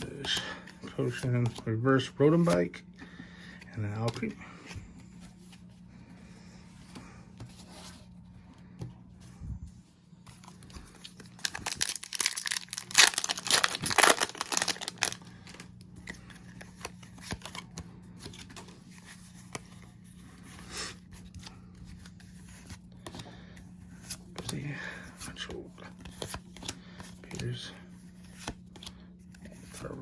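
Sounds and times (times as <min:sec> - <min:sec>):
cards rustling and clicking: 0:00.0 - 0:09.2, 0:10.2 - 0:30.0
foil wrapper tearing: 0:11.4 - 0:15.6.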